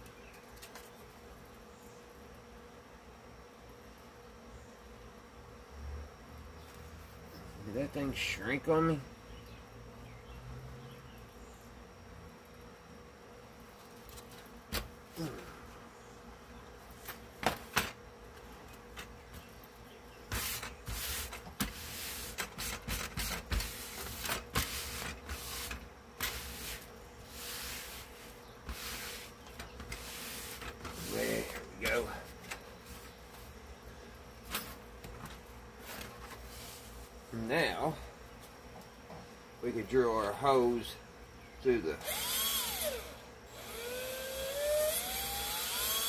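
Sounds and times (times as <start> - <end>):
faint buzzing hum: 0.0 - 46.0
rustling and scraping handling: 13.7 - 14.6, 16.9 - 33.8, 34.4 - 37.3.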